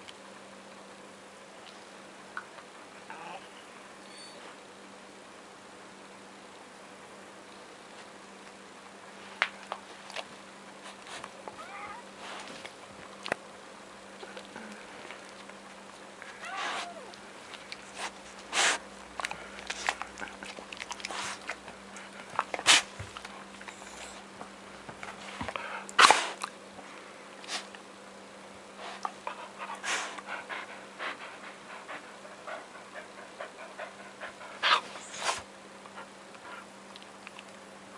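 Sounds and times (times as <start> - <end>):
faint steady hum: 0.0 - 37.9
pet sneezing: 16.4 - 17.1, 18.0 - 18.8, 22.6 - 23.0, 26.0 - 26.4, 34.6 - 35.5.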